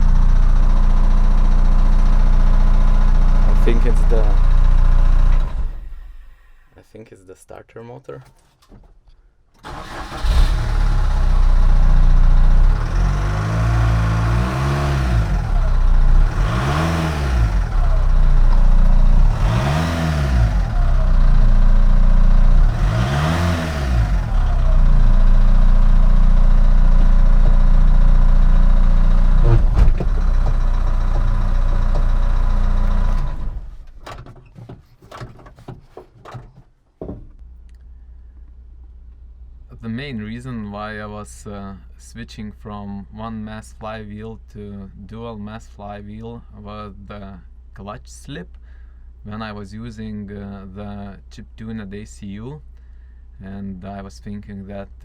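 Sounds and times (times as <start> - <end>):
diesel engine starting and revving: 0.0 - 6.6, 9.6 - 34.0.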